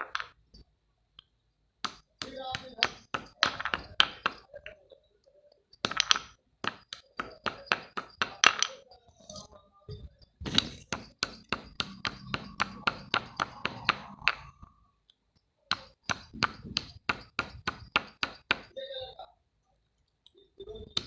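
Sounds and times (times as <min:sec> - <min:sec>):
slate pieces clinking knocks: 0:00.0 - 0:00.6, 0:01.9 - 0:04.5, 0:05.6 - 0:09.3, 0:10.2 - 0:14.6, 0:15.7 - 0:18.8.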